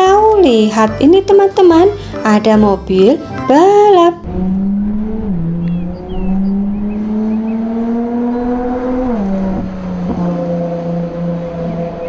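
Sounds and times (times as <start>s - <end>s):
race car engine revving: 4.2s - 12.0s.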